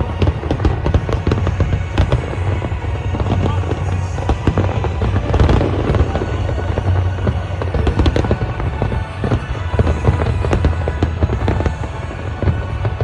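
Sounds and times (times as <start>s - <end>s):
fireworks bangs and crackles: 0.0s - 13.0s
low rumble: 0.0s - 13.0s.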